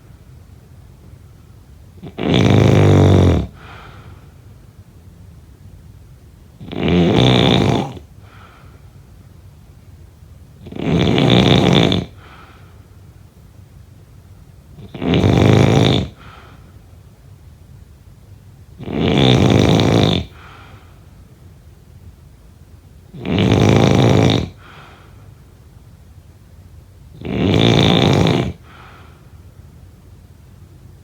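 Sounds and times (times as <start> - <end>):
loud snores: 2.0 - 3.7, 6.6 - 8.1, 10.6 - 12.4, 14.8 - 16.4, 18.8 - 20.5, 23.1 - 24.8, 27.2 - 28.9.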